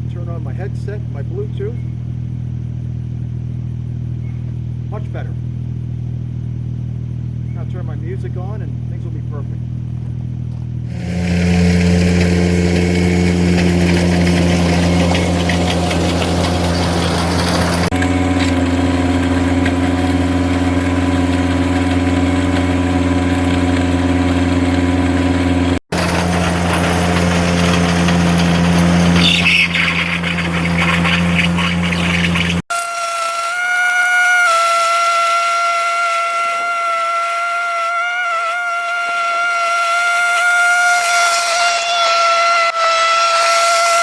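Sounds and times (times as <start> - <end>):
tractor engine running: 0.0 - 32.7.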